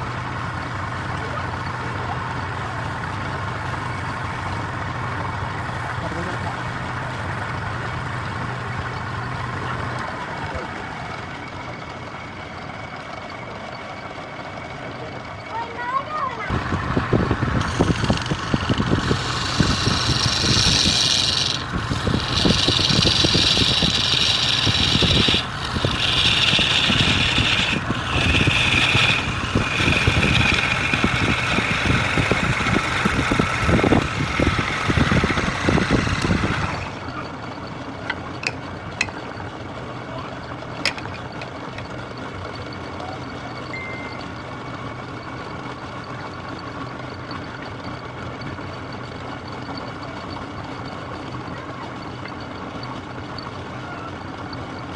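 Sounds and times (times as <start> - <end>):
wood lathe humming: 0.0 - 11.3, 16.5 - 37.1
turning tool scraping spinning wood: 16.5 - 37.2.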